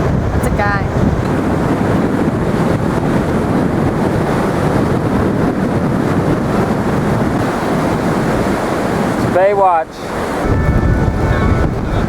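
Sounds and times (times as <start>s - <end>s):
ocean surf: 0.0s - 12.0s
strong wind on microphone: 0.0s - 12.0s.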